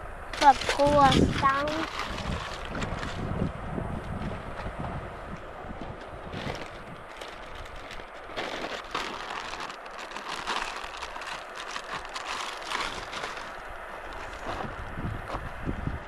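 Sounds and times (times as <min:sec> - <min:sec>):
small clicks and crackles: 0:00.3 - 0:03.3, 0:05.3 - 0:15.4
river water splashing: 0:04.2 - 0:14.9.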